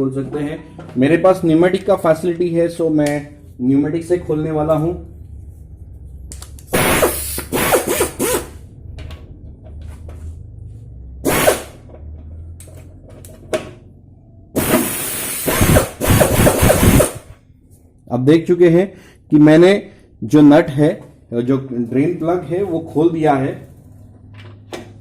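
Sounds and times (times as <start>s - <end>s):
pneumatic impact wrench hammering: 6.7s - 8.6s, 11.2s - 11.9s, 14.6s - 17.4s.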